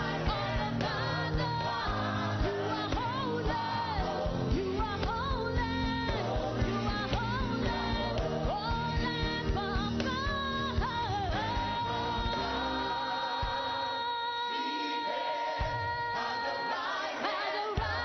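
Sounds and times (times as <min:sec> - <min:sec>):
drums and bass: 0:00.0 - 0:12.5.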